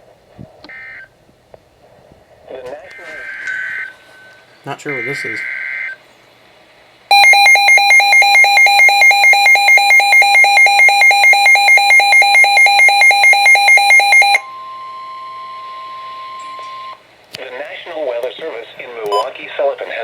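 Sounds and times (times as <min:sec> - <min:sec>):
alarm beeping in quick pulses: 0:07.1 - 0:17.0
steady single alarm tone: 0:07.1 - 0:17.0.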